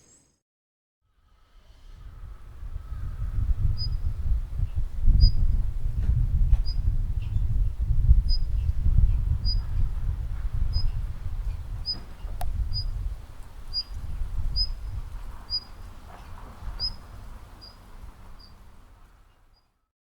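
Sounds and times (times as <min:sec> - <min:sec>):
songbird call notes: 0:13.7 - 0:16.0, 0:16.7 - 0:18.6.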